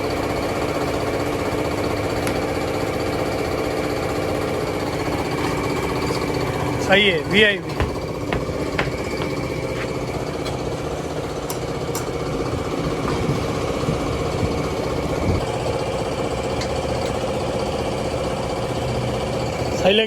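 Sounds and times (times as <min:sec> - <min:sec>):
engine idling with rattle: 0:00.0 - 0:20.0.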